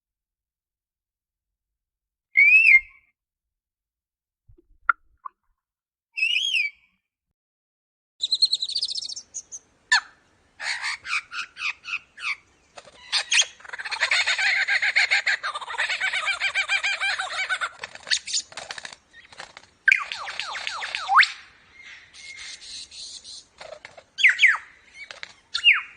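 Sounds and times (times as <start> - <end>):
lyrebird singing: 6.2 - 6.9, 8.2 - 25.9.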